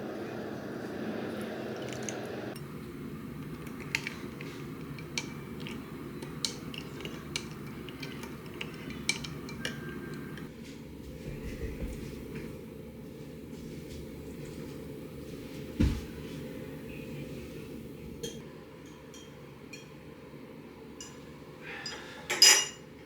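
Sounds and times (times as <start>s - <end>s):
low steady hum: 0.0s - 22.8s
small hard objects clinking: 2.6s - 10.5s.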